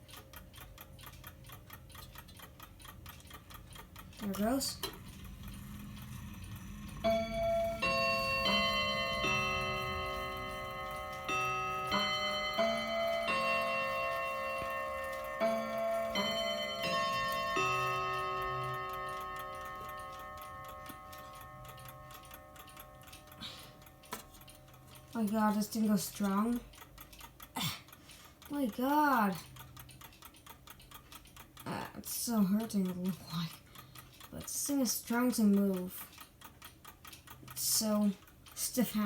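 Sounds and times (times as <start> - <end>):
clock chiming on rods: 0.0 - 39.0
clock ticking: 0.0 - 39.0.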